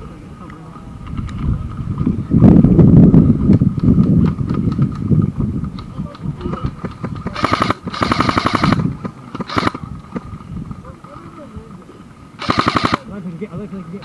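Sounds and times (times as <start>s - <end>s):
low rumbling noise: 0.0s - 14.0s
airsoft rifle full auto bursts: 7.3s - 8.8s, 9.4s - 9.8s, 12.4s - 13.1s.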